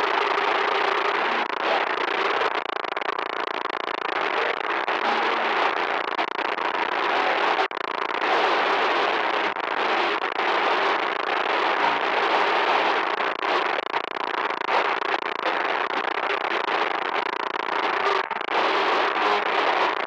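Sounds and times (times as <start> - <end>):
loud crackling static: 0.0 - 20.0.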